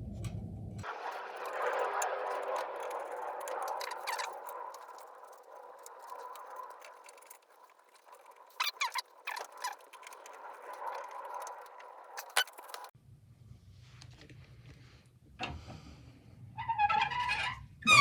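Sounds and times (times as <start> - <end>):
screwdriver and metal fittings rattling: 0.8 - 12.9.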